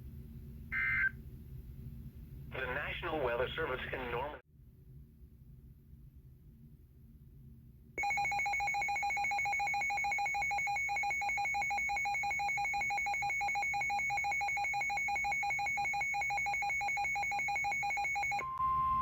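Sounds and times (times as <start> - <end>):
warbling electronic alarm beep: 8.0 - 19.0.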